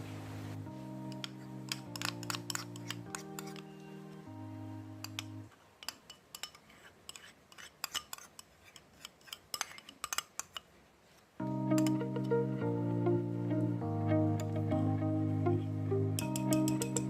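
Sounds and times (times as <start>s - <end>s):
background music: 0.0s - 5.5s, 11.4s - 17.0s
utensils clinking against dishes: 1.2s - 3.7s, 5.1s - 10.7s, 16.2s - 17.0s.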